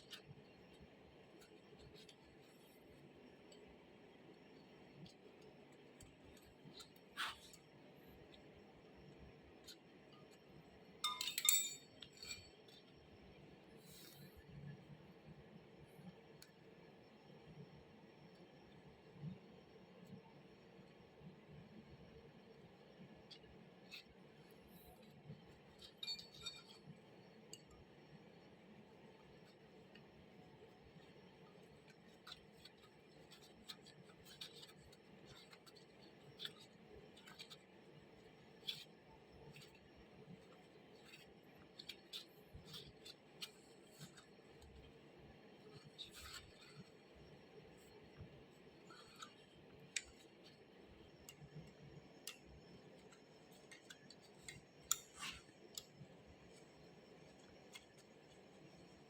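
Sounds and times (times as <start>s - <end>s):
faint clicks and light taps: 0.0s - 10.6s, 29.2s - 59.0s
light clicks and taps: 47.8s - 59.0s.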